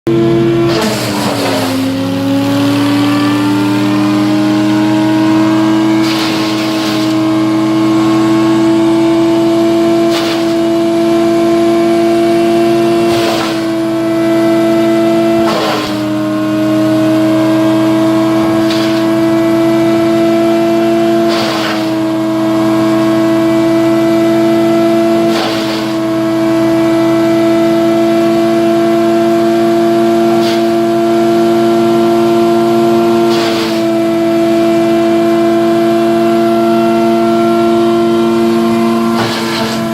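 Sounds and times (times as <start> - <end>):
wood chipper humming: 0.1 - 39.9
wood cracking in chipper: 0.6 - 2.5, 5.9 - 7.2, 10.0 - 10.8, 13.1 - 13.9, 15.4 - 16.1, 18.4 - 19.6, 21.2 - 22.2, 25.3 - 26.2, 33.3 - 34.0, 39.0 - 39.9.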